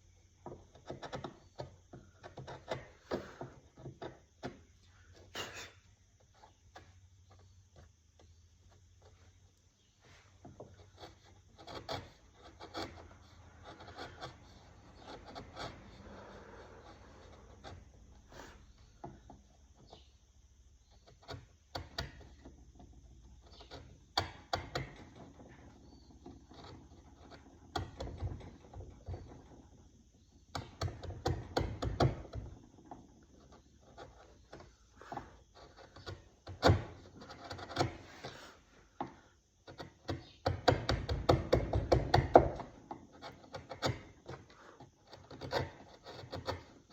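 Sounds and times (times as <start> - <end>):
sharp clicks and knocks: 0.3 - 5.2, 21.0 - 29.8, 30.4 - 38.4, 39.0 - 46.9
scraping strokes on wood: 0.4 - 20.2, 20.8 - 46.9.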